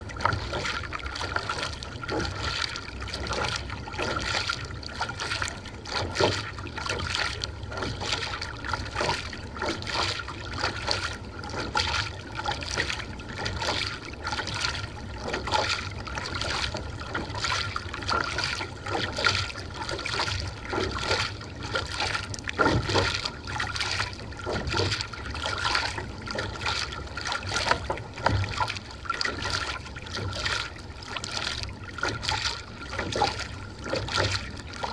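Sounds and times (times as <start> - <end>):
kayak paddles splashing: 0.0 - 34.9.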